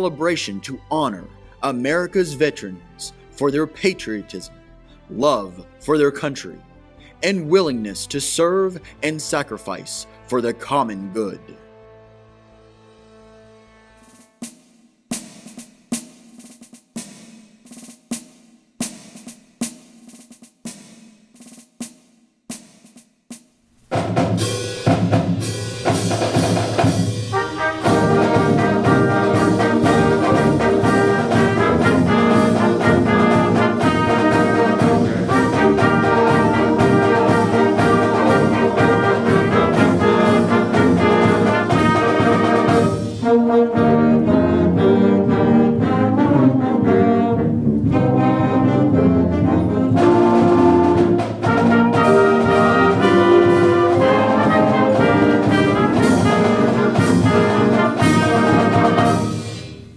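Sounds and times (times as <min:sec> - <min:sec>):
brass band with drums: 0:12.6 - 0:23.0, 0:23.8 - 0:59.9.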